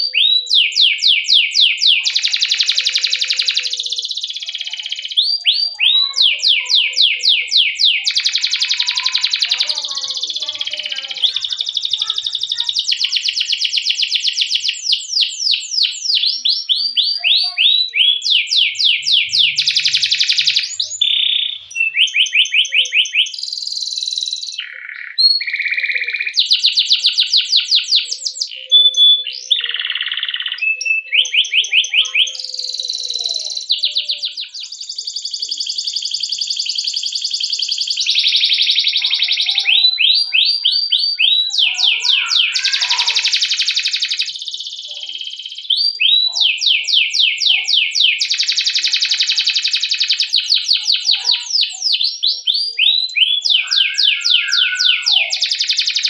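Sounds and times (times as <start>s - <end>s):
canary singing: 0.0s - 56.0s.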